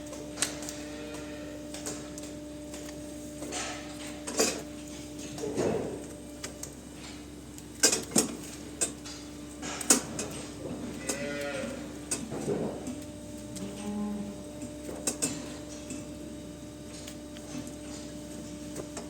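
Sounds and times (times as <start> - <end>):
cow mooing: 11.0 - 11.9, 13.6 - 14.4.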